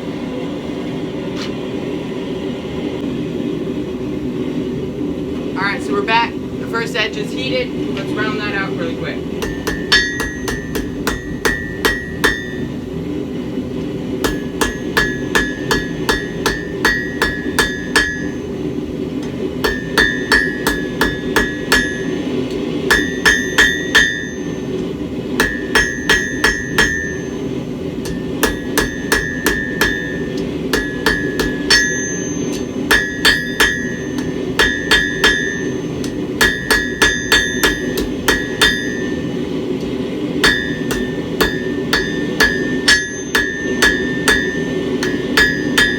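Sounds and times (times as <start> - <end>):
low steady rush: 0.0 - 45.9
hammer striking steel on anvil: 9.4 - 13.0, 13.8 - 45.9.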